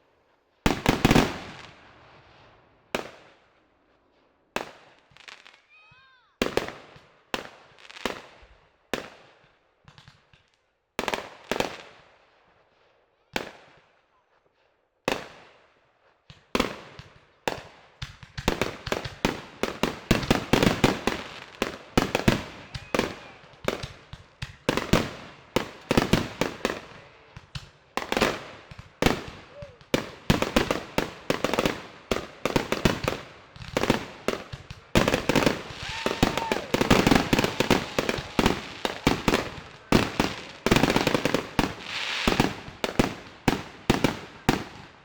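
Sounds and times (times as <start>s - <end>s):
fireworks exploding: 0.6s - 3.5s, 4.6s - 5.6s, 6.4s - 12.1s, 16.2s - 45.0s
rapid barrage of bangs and crackles: 18.0s - 44.7s.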